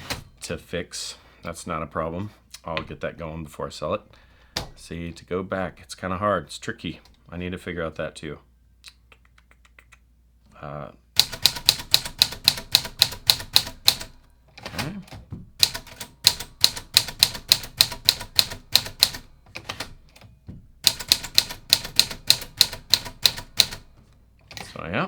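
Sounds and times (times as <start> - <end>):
manual typewriter typing: 0.0 - 0.5, 11.2 - 24.9.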